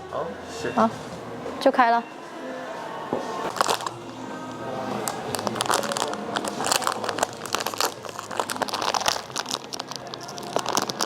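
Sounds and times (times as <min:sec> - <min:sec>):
plastic wrapping crinkling and tearing: 0:03.4 - 0:11.0.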